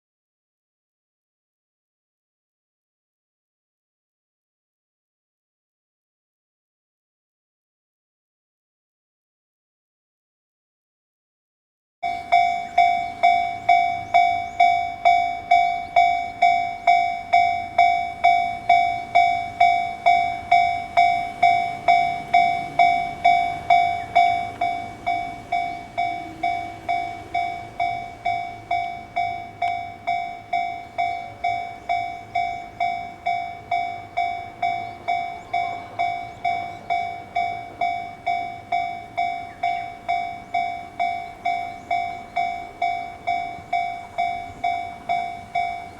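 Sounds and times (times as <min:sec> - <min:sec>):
level-crossing warning bell: 0:12.0 - 0:45.9.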